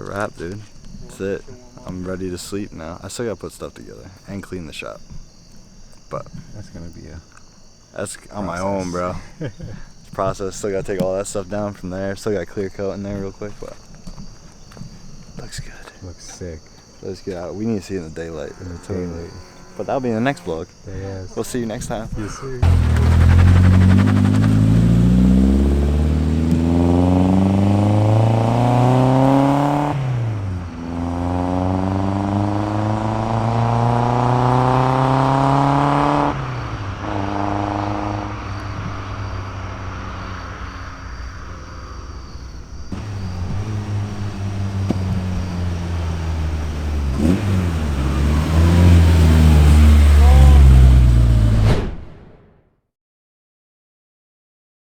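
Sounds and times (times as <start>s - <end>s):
car engine accelerating: 22.6s - 51.8s.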